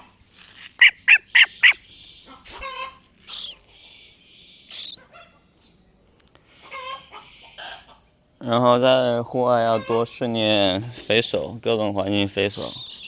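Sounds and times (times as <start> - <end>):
cockatiel calls: 0.8 - 3.7, 4.7 - 5.4
quiet bird chirps: 3.3 - 5.0, 12.5 - 13.0.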